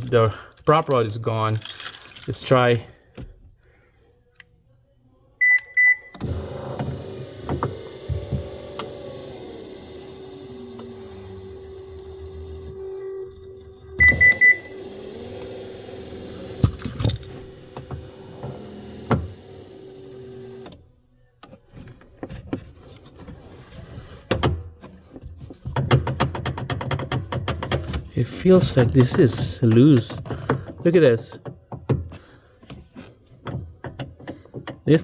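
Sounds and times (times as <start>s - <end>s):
motor whirring: 6.2s - 20.8s
loud beeps: 14.0s - 14.8s.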